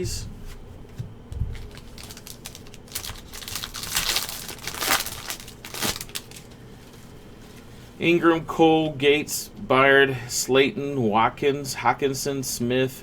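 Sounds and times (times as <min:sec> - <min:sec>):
foil wrapper tearing and crinkling: 0:01.5 - 0:06.5.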